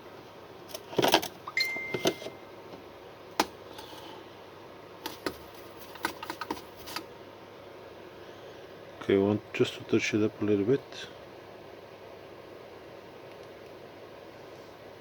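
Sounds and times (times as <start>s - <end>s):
thin high tone: 1.5s - 2.5s.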